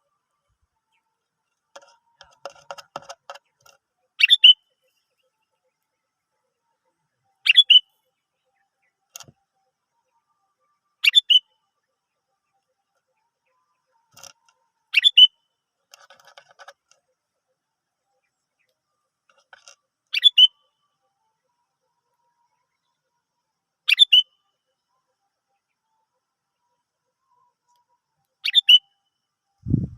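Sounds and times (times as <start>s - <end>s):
soft bird chattering: 4.2s - 4.6s.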